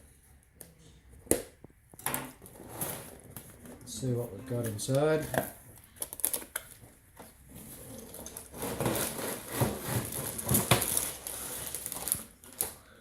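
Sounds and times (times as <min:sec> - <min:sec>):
cardboard rustling and knocking: 0:08.5 - 0:11.2.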